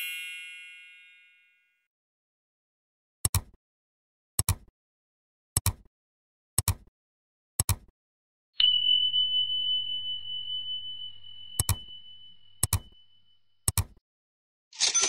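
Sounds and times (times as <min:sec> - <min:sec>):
high bell ding: 0:00.0 - 0:01.8, 0:08.6 - 0:13.4
clock ticking: 0:11.6 - 0:11.9, 0:12.6 - 0:13.0.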